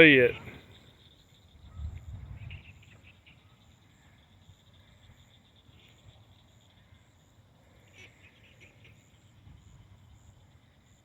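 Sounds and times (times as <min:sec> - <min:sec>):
insect chirring: 0:00.0 - 0:07.4
faint chirps: 0:00.0 - 0:11.0.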